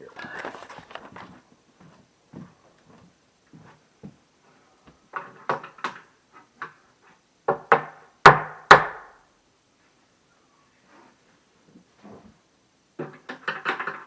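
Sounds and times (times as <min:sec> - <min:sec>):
cabinet parts knocking: 0:13.0 - 0:14.0.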